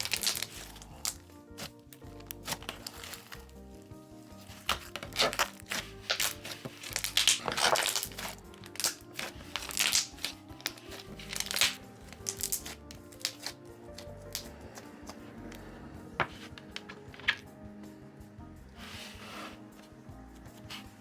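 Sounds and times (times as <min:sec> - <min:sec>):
slime popping and crackling: 0:00.0 - 0:03.7, 0:04.4 - 0:15.6
soft background music: 0:00.0 - 0:21.0.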